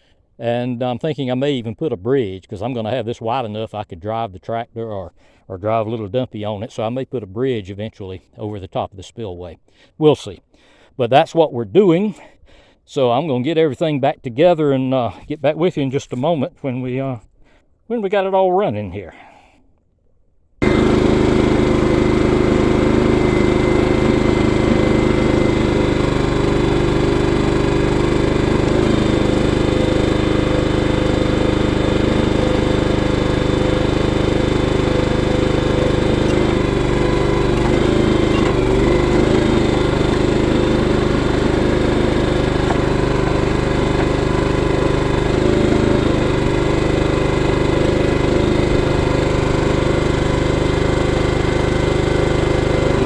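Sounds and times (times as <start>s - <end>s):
small gasoline engine running: 20.6s - 53.0s.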